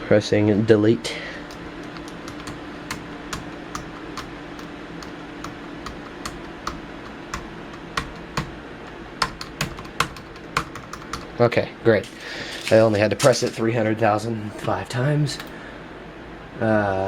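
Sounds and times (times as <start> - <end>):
steady low hum: 0.0 - 17.0
keyboard key tapping: 1.5 - 11.4.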